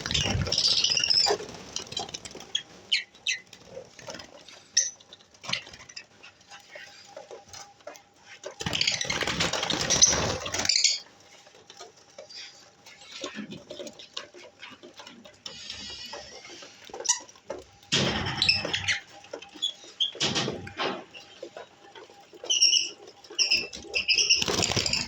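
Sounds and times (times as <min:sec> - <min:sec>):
lovebirds chirping: 0:00.0 - 0:03.4.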